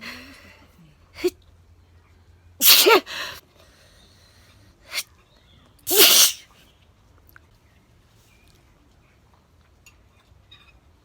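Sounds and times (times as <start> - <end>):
woman sneezing: 2.6 - 3.4, 5.9 - 6.4
sharp breath: 5.9 - 6.4.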